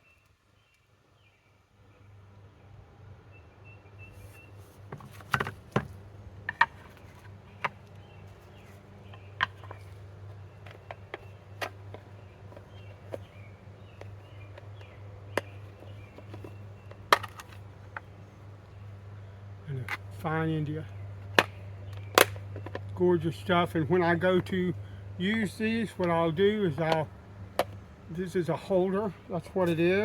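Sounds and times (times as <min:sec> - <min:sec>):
steady low hum: 0:01.6 - 0:30.0
stones knocking on wooden bench: 0:04.9 - 0:13.4, 0:14.0 - 0:18.1.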